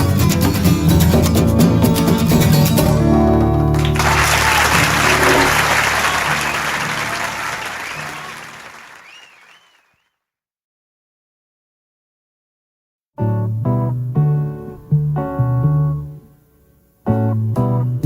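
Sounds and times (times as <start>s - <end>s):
acoustic guitar chord ringing: 2.9s - 7.4s
audience applause: 3.7s - 10.0s
wavering whistle: 3.8s - 10.0s.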